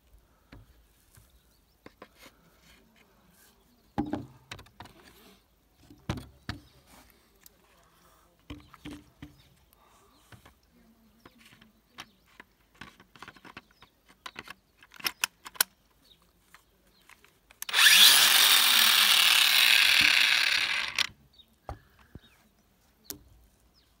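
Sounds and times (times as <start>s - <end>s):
clicks and knocks handling tool: 10.3s - 17.8s
angle grinder running: 17.7s - 21.1s.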